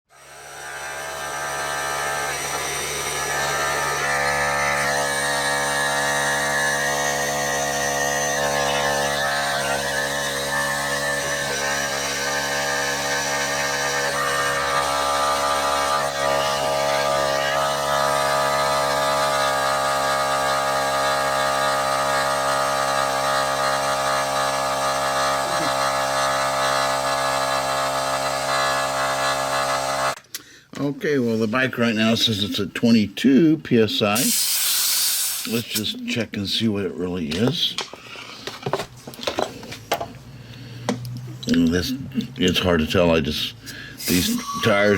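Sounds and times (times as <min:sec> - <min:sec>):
air compressor motor humming: 0:00.1 - 0:30.2, 0:34.2 - 0:35.8, 0:43.6 - 0:44.9.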